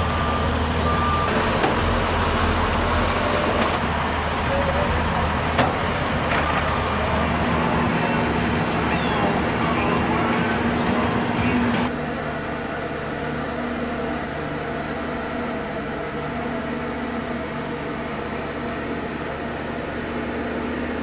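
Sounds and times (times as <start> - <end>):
street noise: 0.0 - 14.8
air-conditioning unit humming: 3.8 - 21.0.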